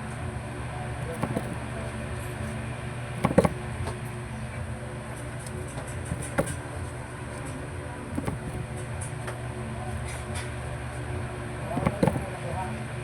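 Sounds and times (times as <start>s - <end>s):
short knocks: 1.1s - 1.6s, 3.2s - 4.0s, 5.5s - 9.4s, 11.7s - 12.6s.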